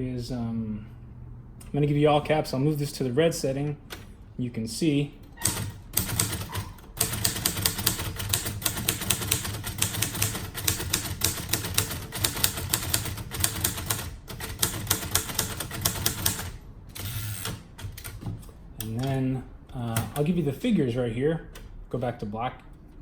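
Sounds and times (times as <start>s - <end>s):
manual typewriter key strikes: 5.4s - 19.2s, 19.9s - 20.4s.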